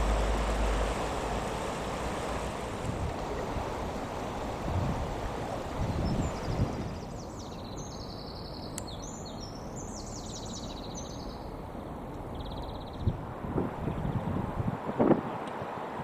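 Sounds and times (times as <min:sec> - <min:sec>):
low rumble of background noise: 0:00.0 - 0:16.0
songbird singing trills: 0:05.9 - 0:13.2.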